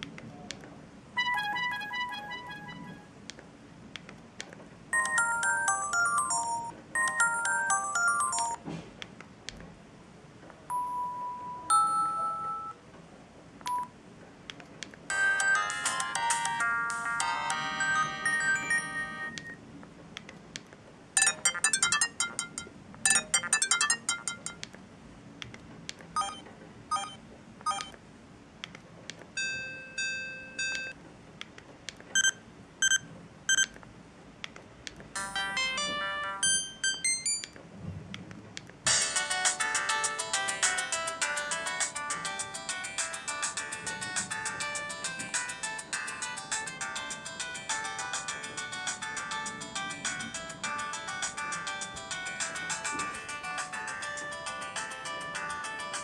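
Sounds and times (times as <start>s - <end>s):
electronic ringtone melodies: 1.2s - 3.1s, 5.0s - 8.6s, 10.7s - 12.8s, 15.1s - 19.6s, 21.2s - 24.6s, 26.2s - 27.9s, 35.2s - 37.6s, 38.9s - 56.0s.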